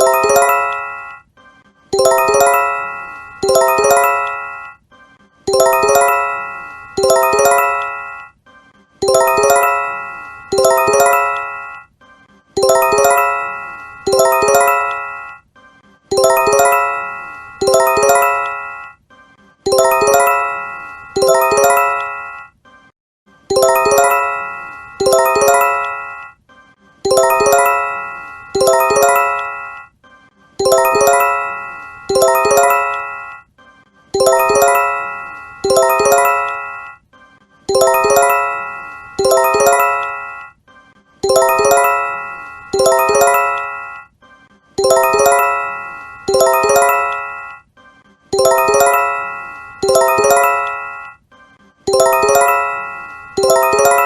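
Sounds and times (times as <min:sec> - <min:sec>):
bell-like alert chime: 0:00.0 - 0:01.2, 0:02.0 - 0:04.8, 0:05.5 - 0:08.3, 0:09.0 - 0:11.9, 0:12.6 - 0:15.4, 0:16.1 - 0:19.0, 0:19.7 - 0:22.5, 0:23.5 - 0:26.3, 0:27.1 - 0:29.9, 0:30.6 - 0:33.4, 0:34.2 - 0:37.0, 0:37.7 - 0:40.6, 0:41.2 - 0:44.1, 0:44.8 - 0:47.6, 0:48.4 - 0:51.2, 0:51.9 - 0:54.0
emergency alert chime: 0:30.7 - 0:33.4, 0:37.7 - 0:40.6, 0:41.3 - 0:44.1, 0:44.8 - 0:47.6, 0:48.4 - 0:51.2.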